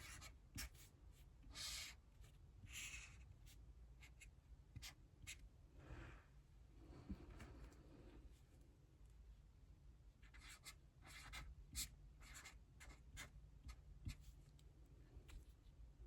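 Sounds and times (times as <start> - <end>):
handwriting scratching: 0.0 - 0.9, 10.2 - 14.4.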